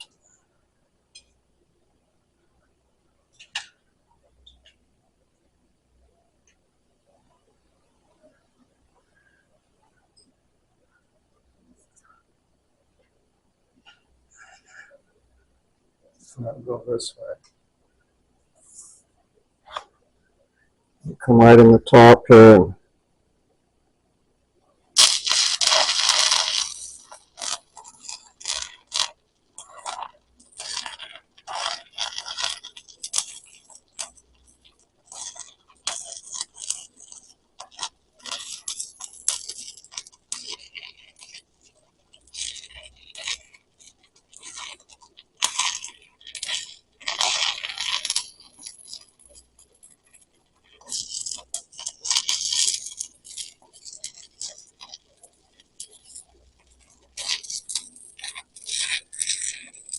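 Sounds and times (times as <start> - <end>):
welding arc crackling: 3.3 - 3.8, 25.0 - 59.9.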